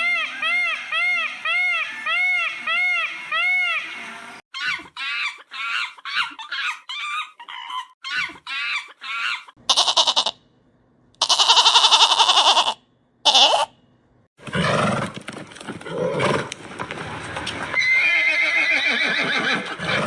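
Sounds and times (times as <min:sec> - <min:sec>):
long quavering animal calls: 0:00.0 - 0:04.4, 0:11.2 - 0:13.7.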